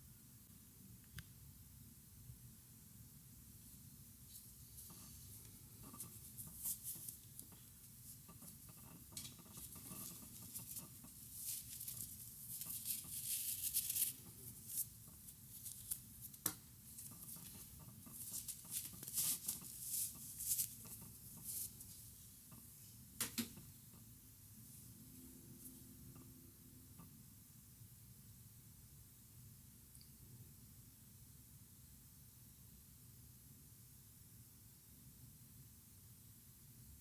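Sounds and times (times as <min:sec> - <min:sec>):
yarn rustling through stitches: 0:03.6 - 0:23.1.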